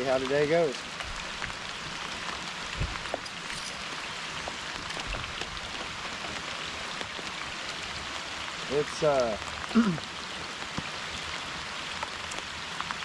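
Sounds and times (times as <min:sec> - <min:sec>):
steady rain falling: 0:00.0 - 0:13.0
low thump: 0:02.7 - 0:03.2.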